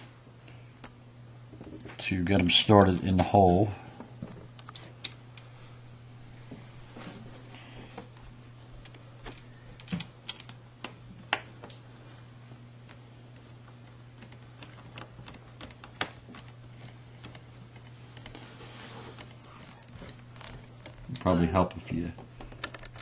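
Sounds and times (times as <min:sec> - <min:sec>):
small tools clicking on plastic: 0:08.8 - 0:11.4, 0:22.4 - 0:23.0.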